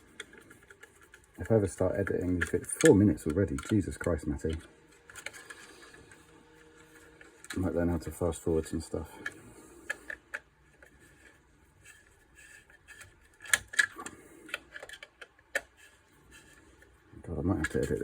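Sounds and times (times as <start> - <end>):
screwdriver clicking on plastic: 0.0 - 6.2, 12.9 - 15.9.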